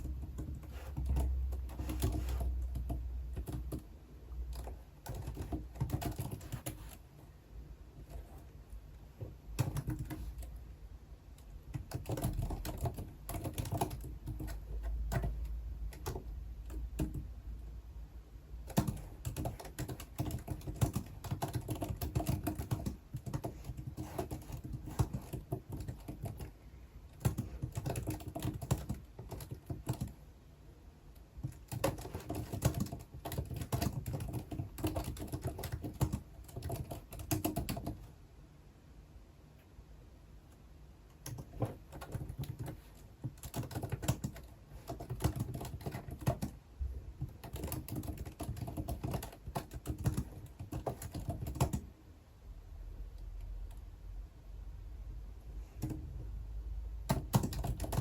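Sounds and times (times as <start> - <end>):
keyboard typing clicks: 0.0 - 7.0, 9.6 - 10.5, 11.4 - 17.3, 18.6 - 26.5, 27.1 - 30.2, 31.4 - 38.0, 40.5 - 46.6, 47.2 - 51.9, 57.1 - 58.0.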